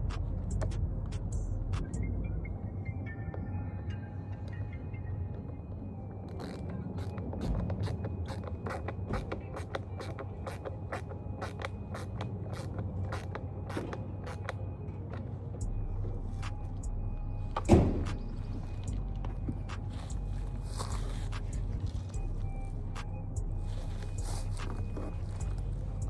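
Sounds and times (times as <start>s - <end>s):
low steady hum: 11.1s - 26.0s.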